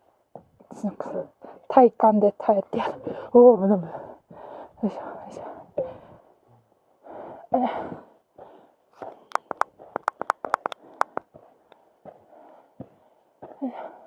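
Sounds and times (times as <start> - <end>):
woman breathing hard: 3.0 - 4.8, 5.4 - 6.4, 7.0 - 10.0
sharp clicks and clinks: 9.3 - 11.2.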